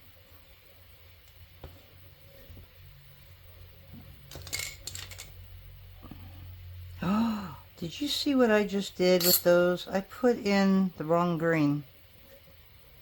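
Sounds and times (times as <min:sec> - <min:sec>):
small tools clinking on desk: 0:09.2 - 0:09.5.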